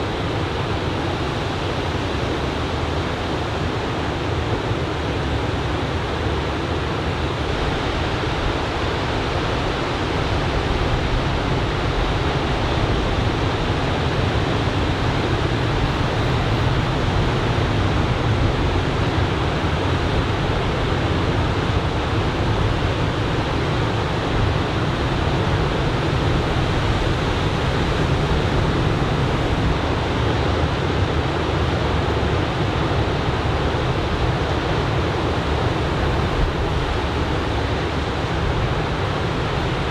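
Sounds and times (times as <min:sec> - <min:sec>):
ocean surf breaking: 0:11.6 - 0:19.5, 0:31.4 - 0:39.9.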